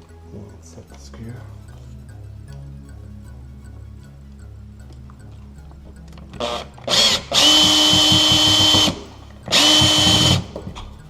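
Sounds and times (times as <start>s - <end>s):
power drill driving a screw: 6.4s - 10.6s.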